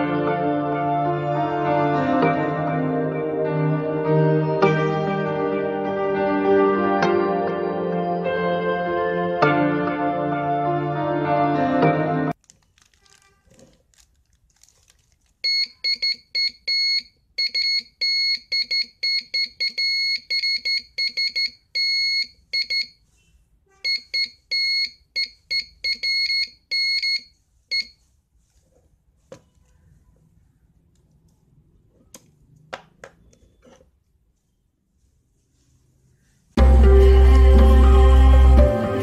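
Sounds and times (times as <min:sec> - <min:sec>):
morse code beeping: 0:15.4 - 0:23.0, 0:23.9 - 0:28.0.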